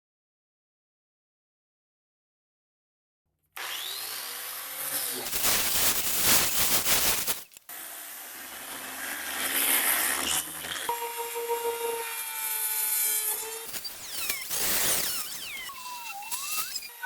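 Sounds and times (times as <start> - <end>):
power tool working wood: 3.6 - 6.1, 7.2 - 17.0.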